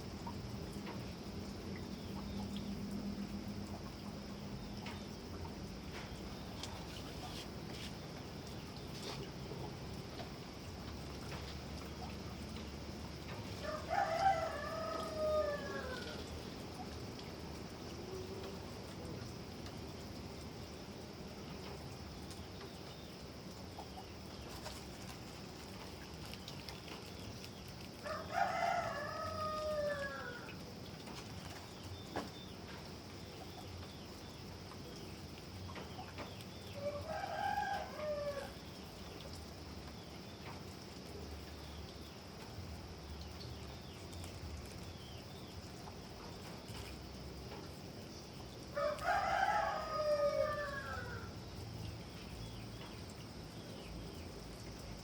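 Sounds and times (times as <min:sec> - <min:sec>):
steady background hiss: 0:00.0 - 0:55.0
rooster crowing: 0:13.6 - 0:16.2, 0:28.0 - 0:30.5, 0:36.8 - 0:38.6, 0:48.8 - 0:51.3.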